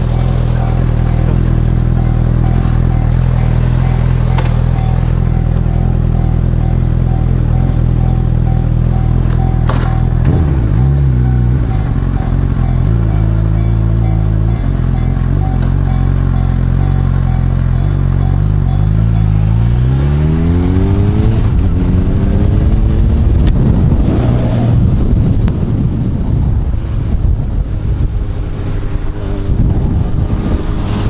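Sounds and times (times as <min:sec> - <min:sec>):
motorcycle engine accelerating: 0:00.0 - 0:31.0
wind noise on microphone: 0:20.3 - 0:31.0.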